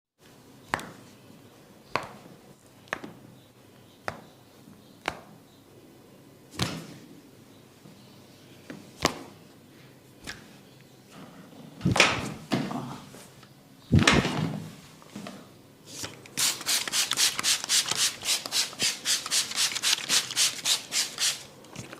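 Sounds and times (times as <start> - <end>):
hands cracking and slapping on head: 0.7 - 1.0, 1.9 - 2.2, 2.9 - 3.2, 4.0 - 4.2, 5.0 - 5.4, 10.2 - 10.5.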